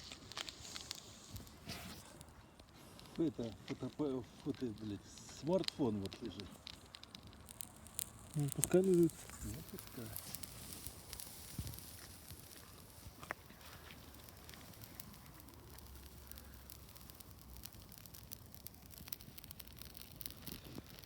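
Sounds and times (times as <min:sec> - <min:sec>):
bonfire crackling: 0:00.0 - 0:21.0
fire popping: 0:00.0 - 0:21.0.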